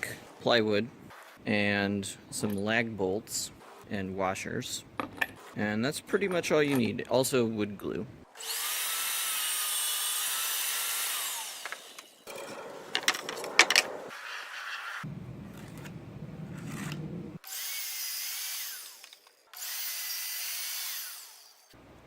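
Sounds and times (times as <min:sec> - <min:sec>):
electric drill whining: 0:08.4 - 0:12.2
low hum: 0:15.1 - 0:17.4.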